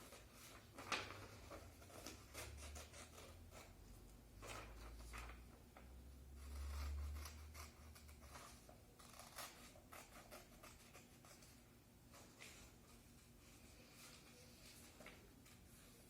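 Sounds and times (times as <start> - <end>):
scissors cutting paper: 0.0 - 3.8, 6.4 - 11.6.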